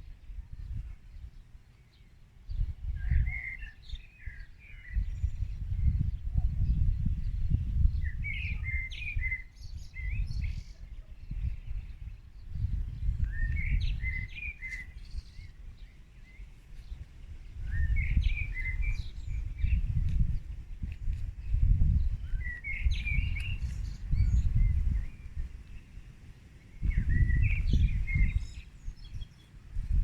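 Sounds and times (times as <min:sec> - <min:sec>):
songbird singing: 0:00.0 - 0:30.0
gusting low rumble: 0:26.8 - 0:28.6.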